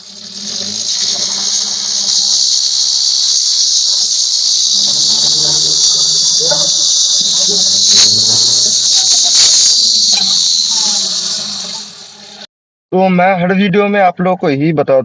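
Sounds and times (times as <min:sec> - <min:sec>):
high-pitched hissing screech: 0:00.0 - 0:12.5.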